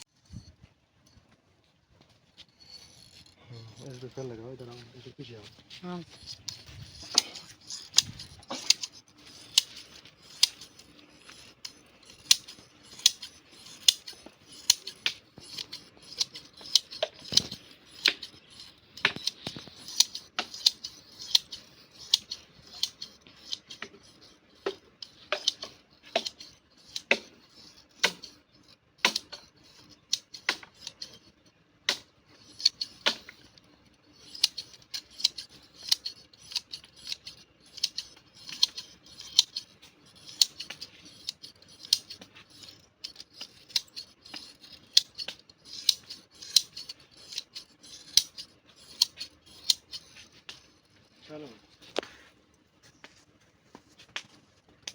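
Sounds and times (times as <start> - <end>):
scissors snipping wool: 12.3 - 18.4, 29.0 - 31.0, 34.2 - 50.6.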